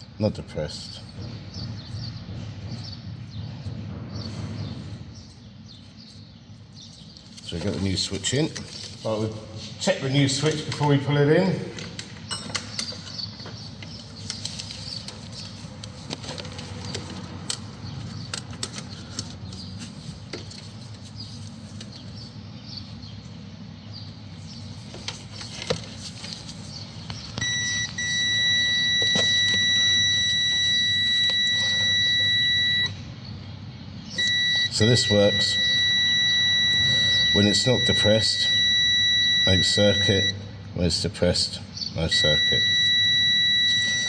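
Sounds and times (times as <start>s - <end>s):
multimeter continuity beep: 27.4s - 33.0s, 34.2s - 40.5s, 42.1s - 44.0s.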